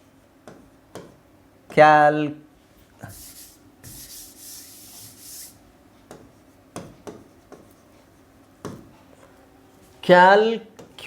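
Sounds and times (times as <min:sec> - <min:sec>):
scratching stroke on board: 0:03.0 - 0:08.8.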